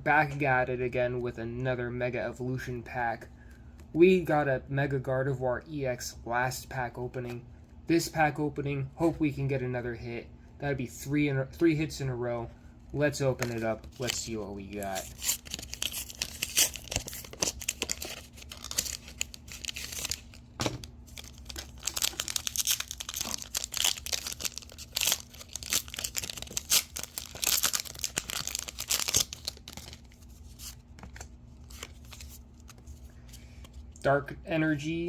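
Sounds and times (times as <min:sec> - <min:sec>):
foil wrapper tearing and crinkling: 0:13.4 - 0:32.8.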